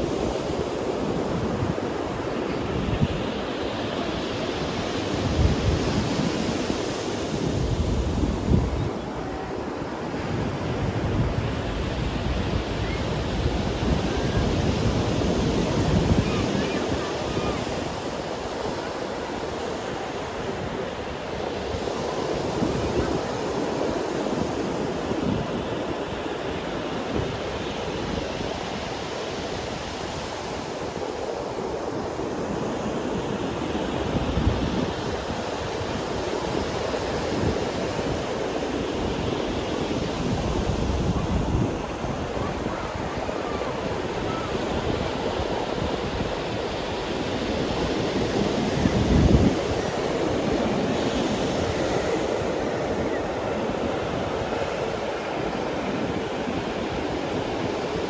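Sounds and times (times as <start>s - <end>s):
waves breaking on beach: 0.0s - 58.0s.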